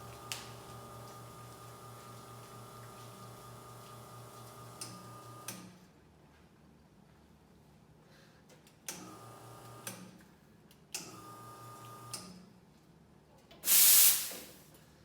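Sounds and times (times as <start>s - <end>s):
espresso machine hum and whine: 0.0s - 5.5s, 9.1s - 9.9s, 11.1s - 12.1s.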